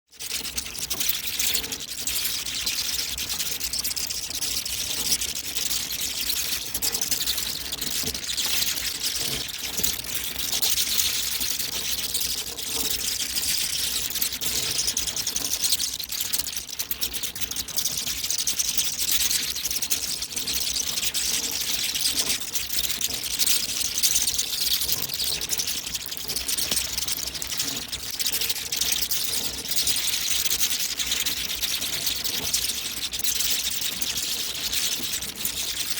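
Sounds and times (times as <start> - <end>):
bats chittering and clicking: 0.2 - 35.9.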